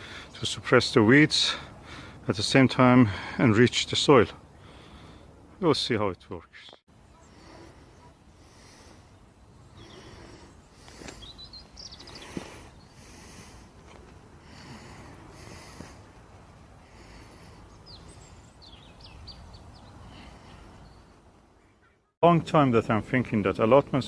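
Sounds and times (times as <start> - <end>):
small birds chirping: 6.0 - 22.1.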